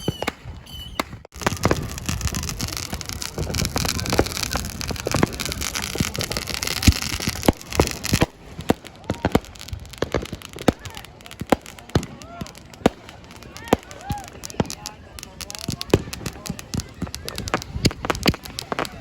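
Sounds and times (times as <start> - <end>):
sharp bangs: 0.0 - 2.5
fireworks crackling: 0.0 - 19.0.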